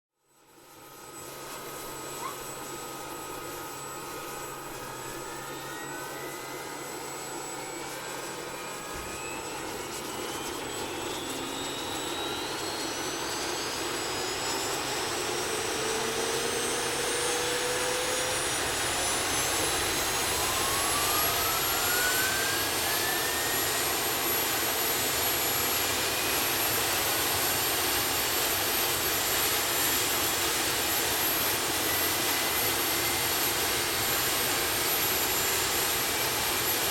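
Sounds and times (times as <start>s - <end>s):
helicopter turbine whine: 0.2s - 36.9s.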